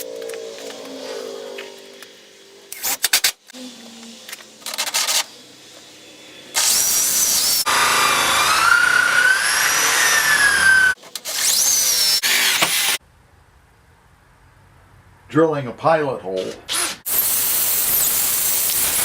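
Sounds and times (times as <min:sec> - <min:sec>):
power drill drilling into wood: 0:06.6 - 0:13.0, 0:16.7 - 0:19.0.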